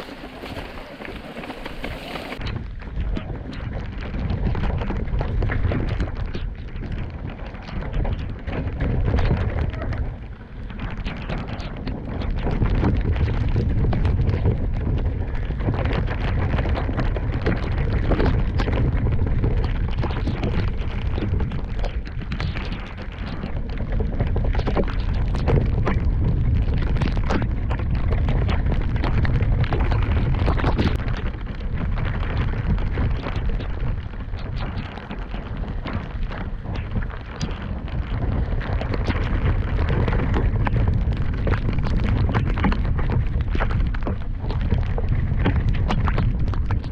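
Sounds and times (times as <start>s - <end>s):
bike clattering over rough ground: 0.0s - 3.0s
wind and tyres rumbling: 0.0s - 46.9s.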